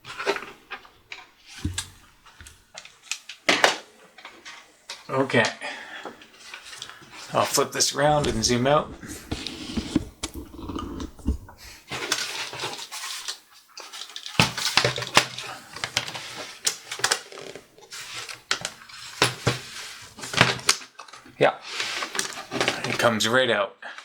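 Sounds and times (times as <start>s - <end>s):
laptop plastic case handled: 8.0s - 11.6s.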